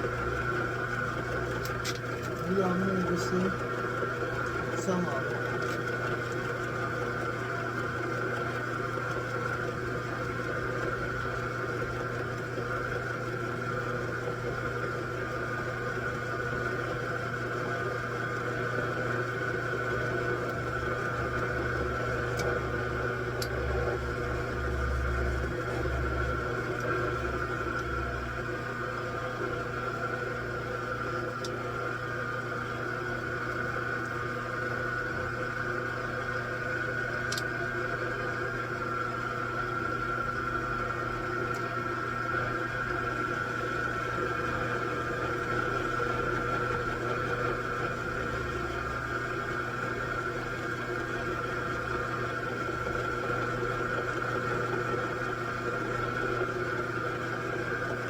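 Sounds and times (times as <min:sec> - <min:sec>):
machine tool drone with high whine: 0:00.0 - 0:06.6, 0:19.9 - 0:53.8.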